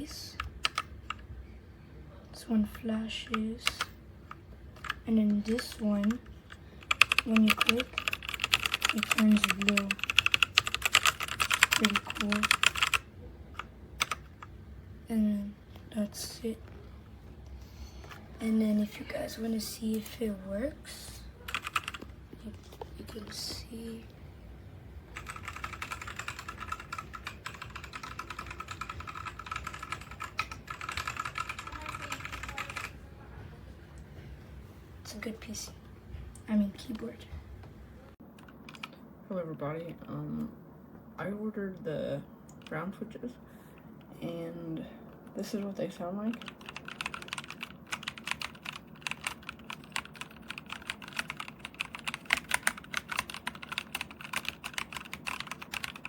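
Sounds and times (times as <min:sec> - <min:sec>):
mechanical keyboard typing: 0:00.4 - 0:01.2, 0:03.2 - 0:13.0, 0:13.6 - 0:14.4, 0:21.5 - 0:22.1, 0:25.2 - 0:33.0, 0:38.4 - 0:39.0, 0:46.3 - 0:56.0.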